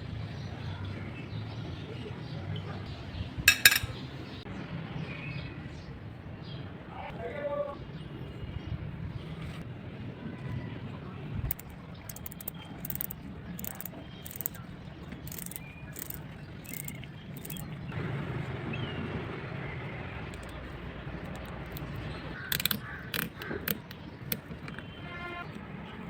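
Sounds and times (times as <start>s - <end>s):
sharp clicks: 11.5s - 14.6s, 15.3s - 17.6s, 21.2s - 24.8s.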